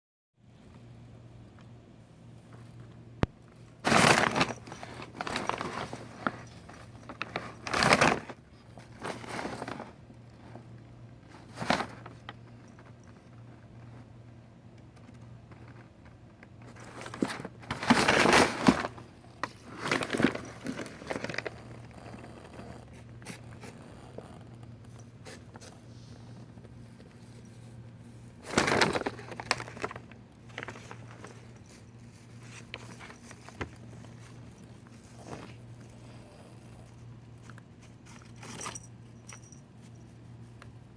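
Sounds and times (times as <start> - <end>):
cat scraping in bags: 3.8 - 10.0, 16.7 - 26.5, 28.3 - 38.6
paper bags crinkling: 3.8 - 10.0, 16.7 - 22.3, 28.3 - 36.1.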